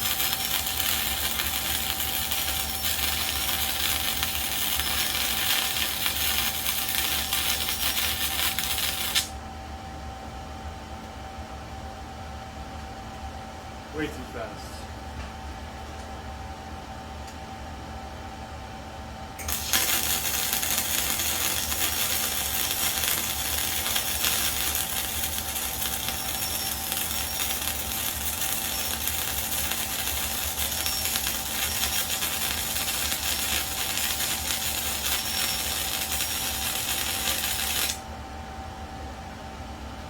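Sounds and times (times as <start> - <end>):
welding arc crackling: 0.0 - 9.3, 19.4 - 38.0.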